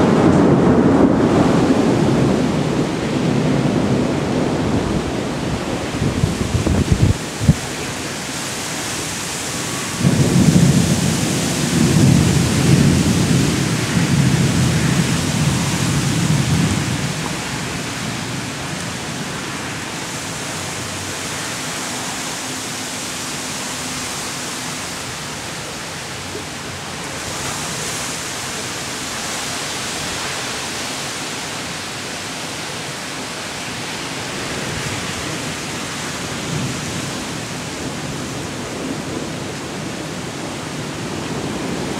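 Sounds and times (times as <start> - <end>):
thunder rumbling: 0.0 - 23.9
steady rain: 0.0 - 41.9.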